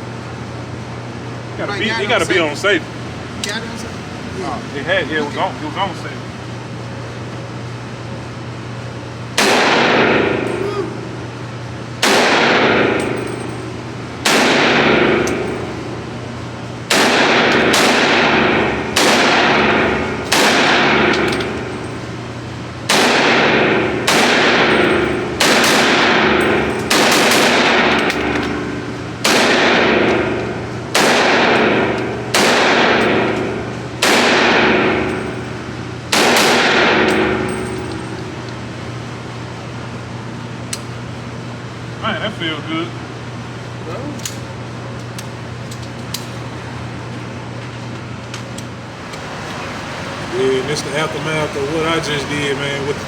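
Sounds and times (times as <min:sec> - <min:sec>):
steady low hum: 0:00.0 - 0:53.0
rifle shots echoing: 0:09.4 - 0:10.5, 0:12.0 - 0:13.1, 0:14.2 - 0:15.8, 0:16.9 - 0:21.8, 0:22.9 - 0:37.6.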